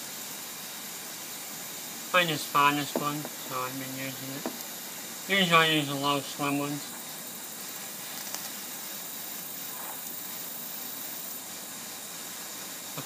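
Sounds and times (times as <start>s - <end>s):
torch flame hissing: 0.0s - 13.0s.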